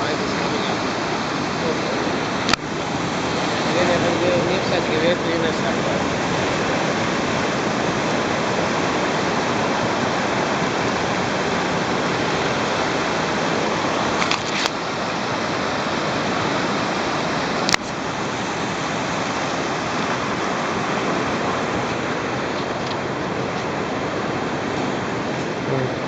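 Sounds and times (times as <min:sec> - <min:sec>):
sea surf rushing: 0:00.0 - 0:26.0.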